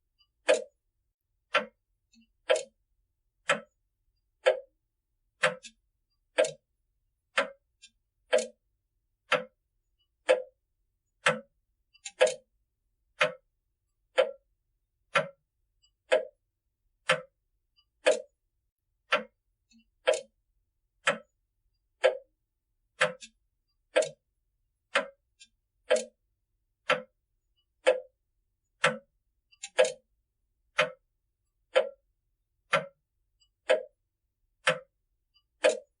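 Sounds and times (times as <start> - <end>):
clock ticking: 0.2 - 0.8, 1.5 - 2.8, 3.4 - 3.8, 4.4 - 4.8, 5.4 - 6.7, 7.3 - 8.6, 9.2 - 14.5, 15.1 - 16.4, 17.0 - 18.4, 19.0 - 20.4, 21.0 - 22.3, 22.9 - 26.2, 26.8 - 32.1, 32.7 - 36.0.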